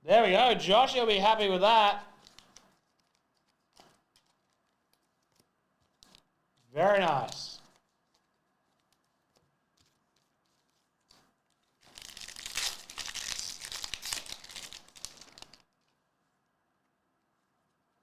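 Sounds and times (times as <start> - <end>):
foil wrapper tearing and crinkling: 2.2 - 5.4, 11.5 - 15.6.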